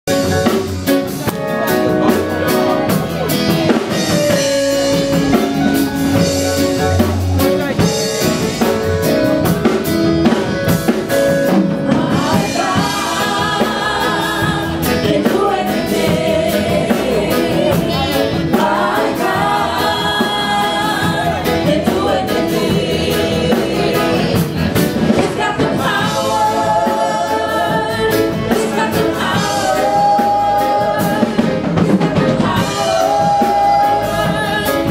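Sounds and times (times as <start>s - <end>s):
gospel band playing with drums: 0.0s - 34.9s
people singing: 11.0s - 34.9s.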